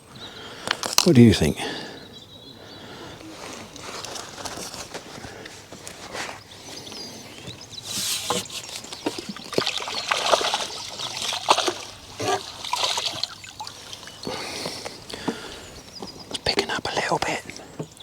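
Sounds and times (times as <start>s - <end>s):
water splashing and trickling: 7.3s - 16.7s.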